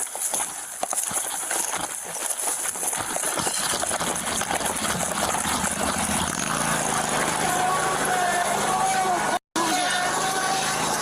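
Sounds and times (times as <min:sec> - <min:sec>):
heavy running footsteps: 0:00.0 - 0:06.7
steady engine hum: 0:03.5 - 0:11.0.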